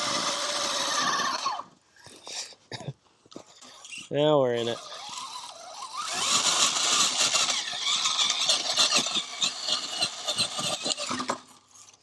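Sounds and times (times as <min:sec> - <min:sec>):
electric motor whine: 0:00.0 - 0:01.7, 0:04.7 - 0:11.4
rapid gear clicking: 0:06.0 - 0:11.3.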